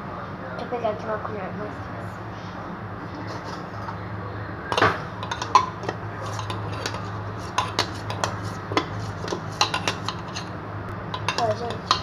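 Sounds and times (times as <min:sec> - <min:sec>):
steady low hum: 0:00.0 - 0:12.0
spoon scraping a container: 0:03.2 - 0:03.7, 0:05.2 - 0:10.5, 0:11.1 - 0:12.0.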